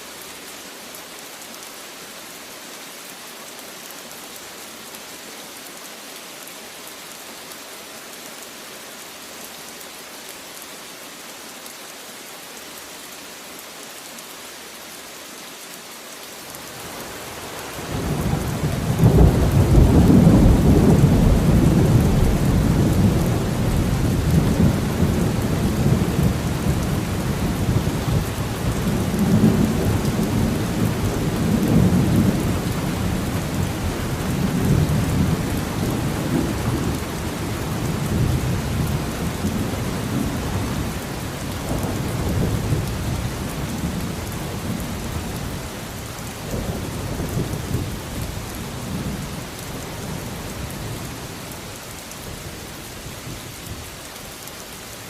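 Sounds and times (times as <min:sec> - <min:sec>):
rain hiss: 0:00.0 - 0:55.0
rumble of thunder: 0:18.1 - 0:40.5.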